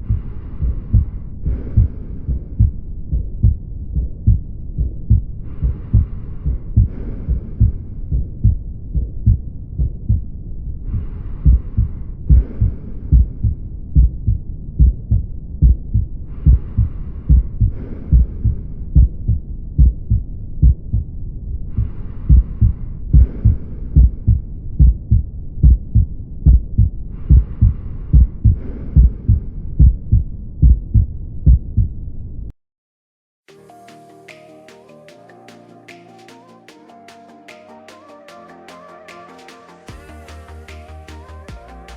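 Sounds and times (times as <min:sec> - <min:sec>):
soft breath sounds: 0:00.0 - 0:20.2, 0:21.6 - 0:31.0
heartbeat thuds through stethoscope: 0:00.0 - 0:32.0.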